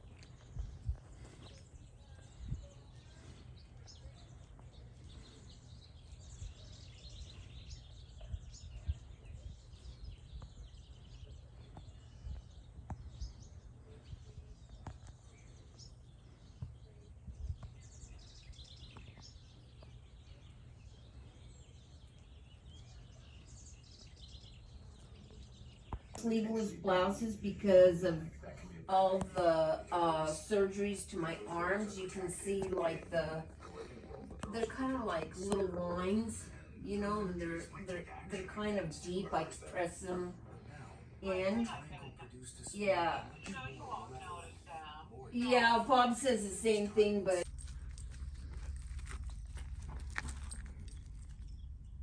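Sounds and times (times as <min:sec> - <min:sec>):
faint bird chirps: 0:00.0 - 0:26.3
low steady rumble: 0:44.2 - 0:52.0.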